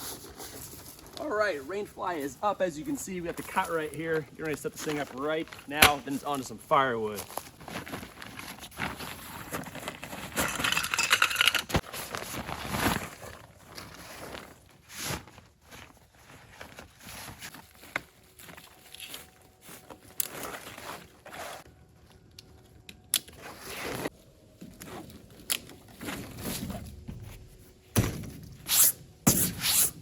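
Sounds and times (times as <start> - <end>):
nylon fabric rustling: 7.2 - 10.5, 11.8 - 21.7.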